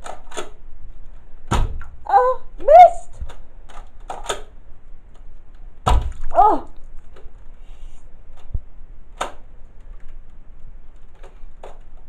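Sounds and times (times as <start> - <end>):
sharp plastic clicks: 0.0 - 0.6, 3.2 - 4.6.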